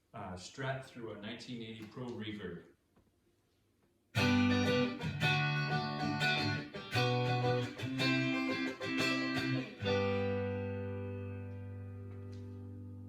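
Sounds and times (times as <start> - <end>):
clean electric guitar chords: 4.2 - 13.0.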